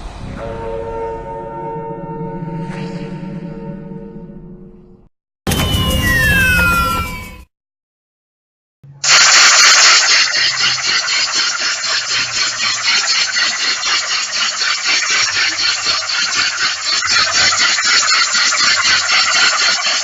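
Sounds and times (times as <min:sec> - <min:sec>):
rasping rattling mechanical noise: 0:09.0 - 0:20.0.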